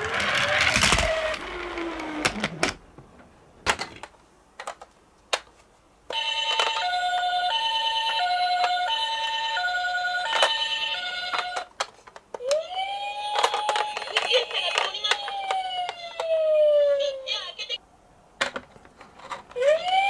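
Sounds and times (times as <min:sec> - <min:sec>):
toy ambulance two-tone siren: 0:06.1 - 0:11.6.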